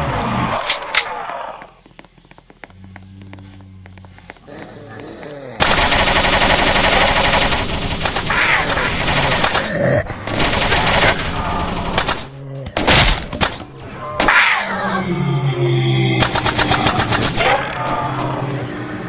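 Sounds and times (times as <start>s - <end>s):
rapid automatic gunfire: 5.6s - 14.4s, 16.2s - 18.6s.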